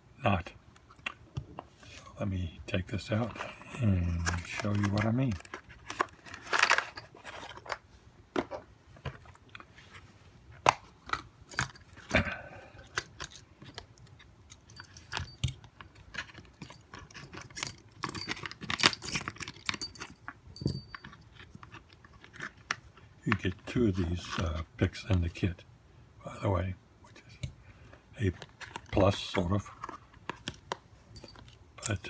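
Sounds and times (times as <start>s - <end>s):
metal tools clinking and rattling: 4.2s - 7.8s, 11.1s - 13.9s, 14.5s - 15.5s, 16.1s - 21.3s, 31.2s - 32.0s.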